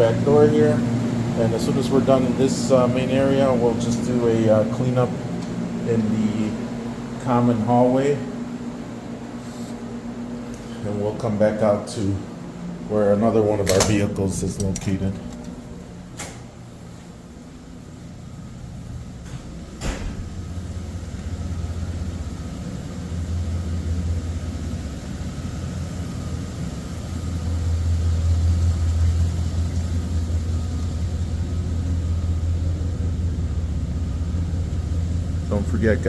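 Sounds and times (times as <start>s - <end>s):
vehicle engine rumble: 13.6s - 36.0s.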